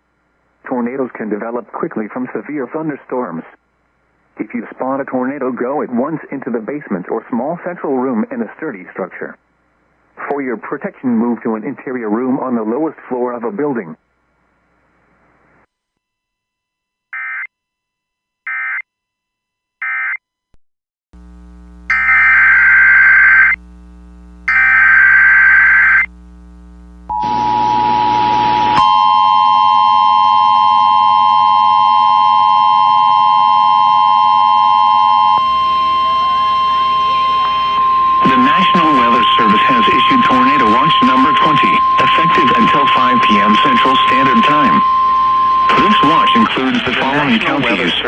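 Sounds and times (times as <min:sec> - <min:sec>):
faint steady hum: 0:00.0 - 0:15.7, 0:21.2 - 0:48.0
electronic attention tone: 0:27.1 - 0:48.0.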